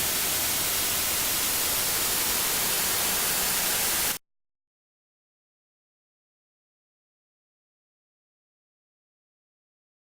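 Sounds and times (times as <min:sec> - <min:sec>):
tv static hiss: 0:00.0 - 0:04.2.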